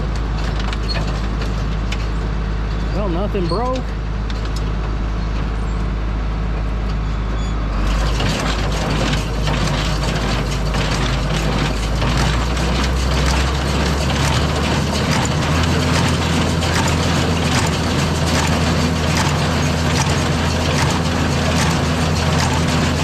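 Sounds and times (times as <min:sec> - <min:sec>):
tractor engine running: 0:00.0 - 0:07.1, 0:07.7 - 0:23.0
hay baler rattling clatter: 0:00.2 - 0:02.2, 0:07.8 - 0:23.0.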